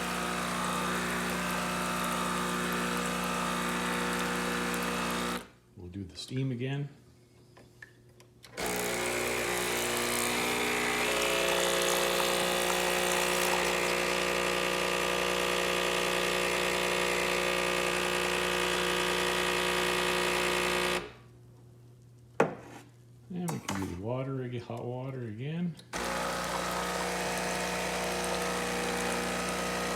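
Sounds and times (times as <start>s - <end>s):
pump buzzing: 0.0s - 5.5s, 8.5s - 21.2s, 26.0s - 29.9s.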